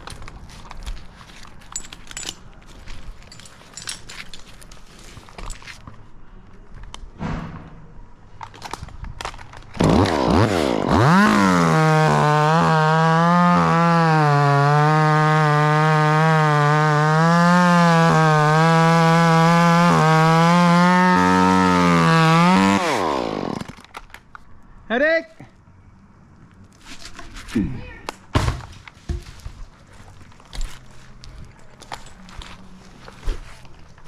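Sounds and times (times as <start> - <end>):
chainsaw engine revving: 9.8 - 23.7.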